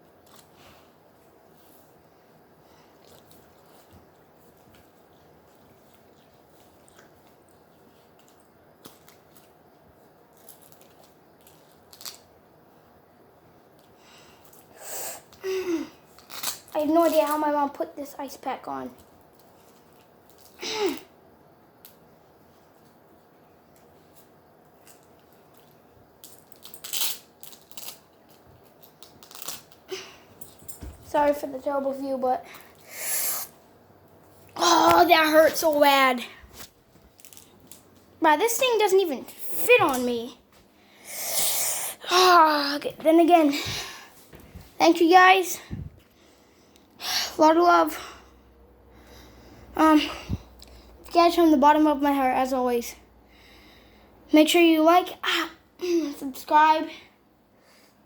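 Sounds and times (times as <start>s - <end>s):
crinkling and rustling: 3.0s - 12.3s, 23.7s - 31.5s, 34.2s - 40.7s
ice pack rustling and crinkling: 36.5s - 38.0s.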